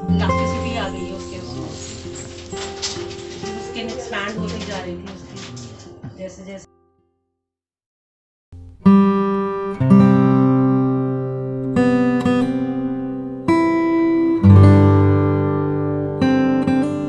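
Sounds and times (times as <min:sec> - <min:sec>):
acoustic guitar strumming chords: 0:00.0 - 0:06.8, 0:08.6 - 0:17.0.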